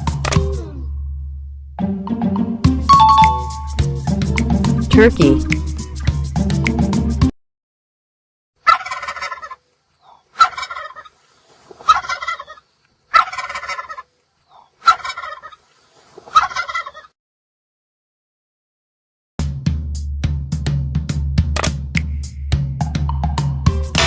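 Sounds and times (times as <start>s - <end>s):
turkey gobbling: 8.6s - 17.1s.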